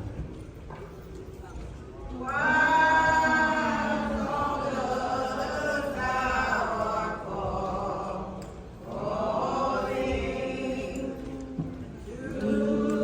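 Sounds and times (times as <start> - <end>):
group singing long notes: 2.2 - 13.0.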